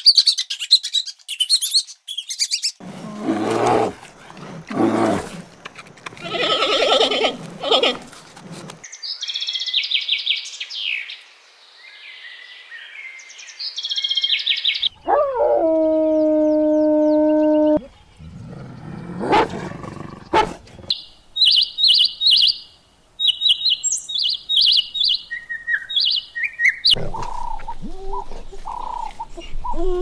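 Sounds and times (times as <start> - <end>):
harsh wavering animal calls: 6.1 - 8.8, 26.9 - 30.0
long held animal call: 6.2 - 8.1
high bird chirping: 20.9 - 29.9.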